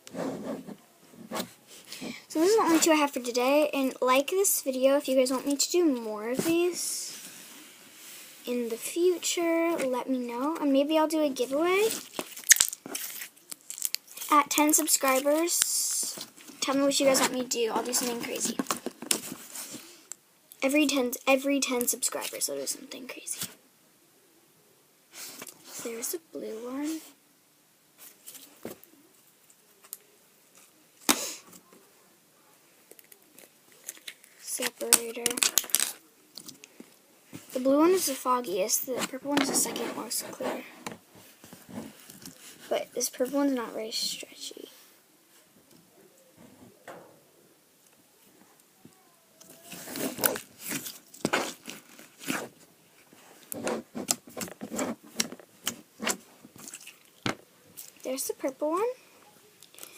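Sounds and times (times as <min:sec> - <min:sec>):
slime crackling and squelching: 0:11.8 - 0:19.2, 0:32.9 - 0:36.8, 0:49.4 - 0:52.4, 0:54.1 - 0:58.6.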